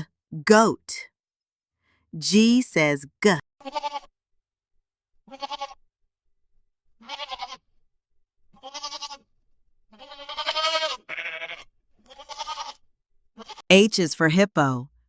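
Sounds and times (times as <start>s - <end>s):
goat bleating: 3.6s - 4.1s, 5.3s - 5.8s, 7.0s - 7.7s, 8.5s - 9.3s, 9.9s - 12.8s, 13.4s - 13.7s.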